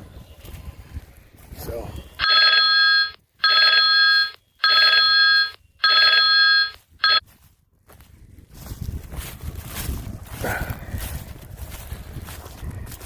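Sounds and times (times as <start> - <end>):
phone ringtone: 2.2 - 7.2.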